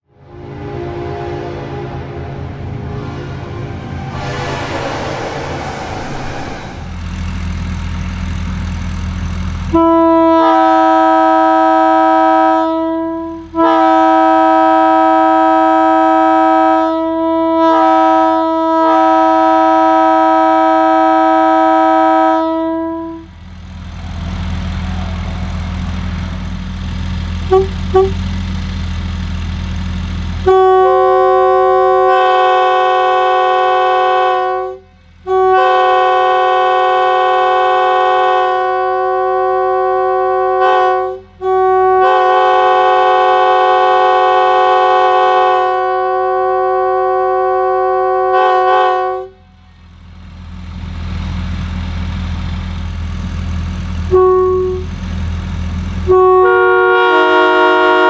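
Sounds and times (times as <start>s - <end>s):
locomotive air horn blasts: 0.2s - 6.8s, 9.7s - 23.3s, 27.4s - 28.3s, 30.4s - 49.4s, 54.1s - 54.9s, 56.0s - 58.0s
low steady rumble: 4.1s - 7.9s.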